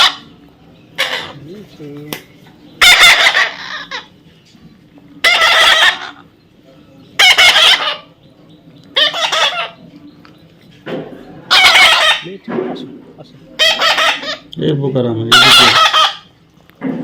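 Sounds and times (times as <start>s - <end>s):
parrot squawking: 0.0s - 1.4s, 2.8s - 4.2s, 5.2s - 6.3s, 7.2s - 8.2s, 9.0s - 9.8s, 11.5s - 12.4s, 13.6s - 14.5s, 15.2s - 16.4s.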